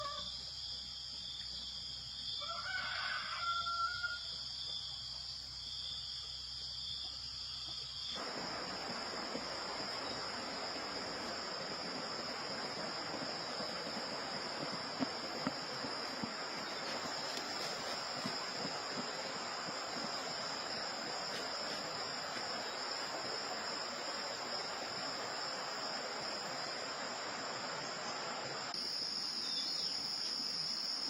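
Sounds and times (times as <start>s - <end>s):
rooster crowing: 2.4s - 4.4s.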